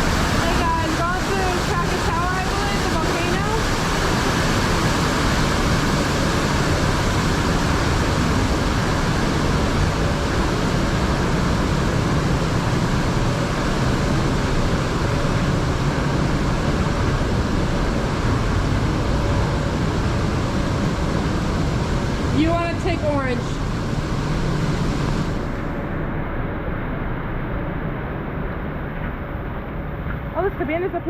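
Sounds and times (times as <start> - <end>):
rush of falling water: 0.0 - 26.0.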